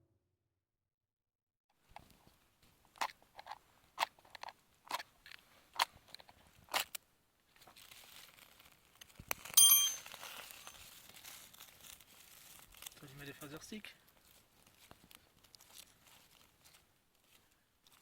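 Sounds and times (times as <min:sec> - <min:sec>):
metallic clink ringing: 0:09.6 - 0:10.8.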